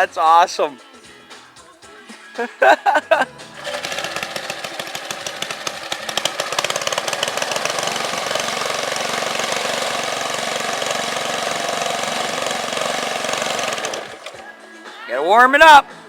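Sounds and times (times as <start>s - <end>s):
small tractor engine running: 3.4s - 14.4s.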